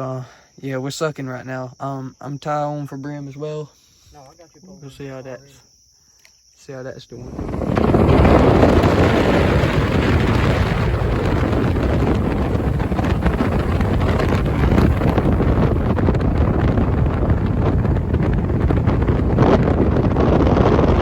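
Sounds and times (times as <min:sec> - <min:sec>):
wind buffeting microphone: 0:07.2 - 0:21.0.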